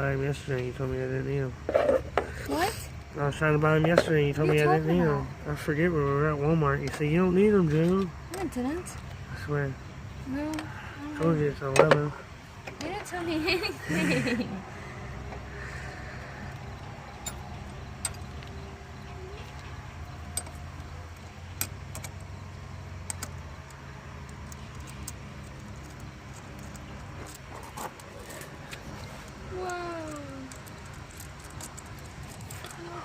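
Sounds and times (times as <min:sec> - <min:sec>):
metal tools clicking: 0:16.5 - 0:22.4, 0:23.0 - 0:32.9.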